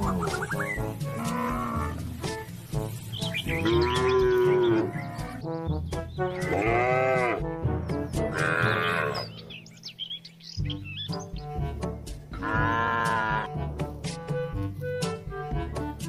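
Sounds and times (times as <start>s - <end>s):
cows mooing: 1.0s - 2.1s, 3.5s - 5.5s, 6.4s - 7.5s, 8.3s - 9.4s, 12.3s - 13.5s.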